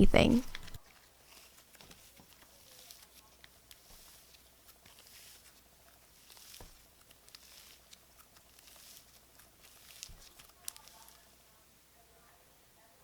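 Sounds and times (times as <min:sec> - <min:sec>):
sticky crackles and pops: 0:00.6 - 0:11.4
slime being squished by hand: 0:03.7 - 0:11.2.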